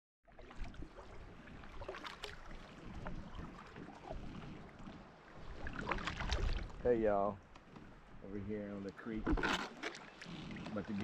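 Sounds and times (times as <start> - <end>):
water washing around kayak: 0.3 - 11.0
small splashes and knocks: 5.5 - 6.8.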